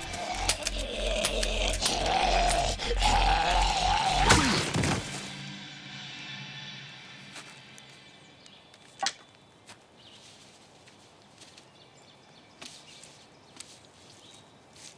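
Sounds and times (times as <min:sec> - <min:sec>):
sharp clicks: 0:00.0 - 0:03.1
music: 0:00.0 - 0:08.9.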